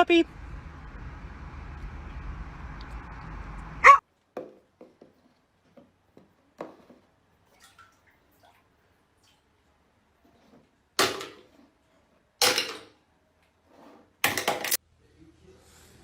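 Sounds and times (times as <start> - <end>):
dog barking: 3.8 - 4.0.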